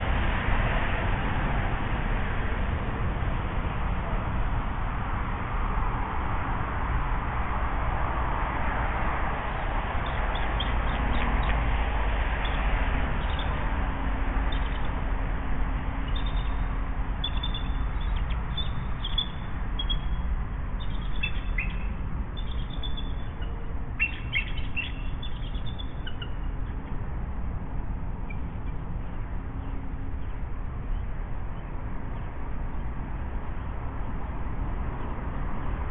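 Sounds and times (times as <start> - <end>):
steady low rumble: 0.0 - 35.9.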